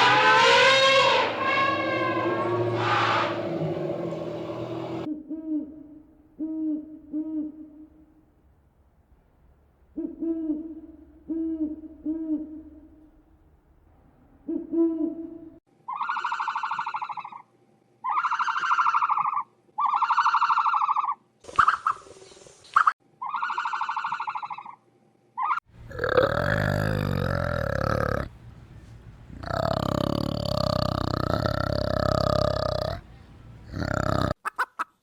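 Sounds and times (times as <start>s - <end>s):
animal pulsed calls: 0.0s - 5.1s, 25.8s - 34.4s
low rough animal call: 0.0s - 5.1s, 25.8s - 34.4s
owl hooting: 25.8s - 34.4s.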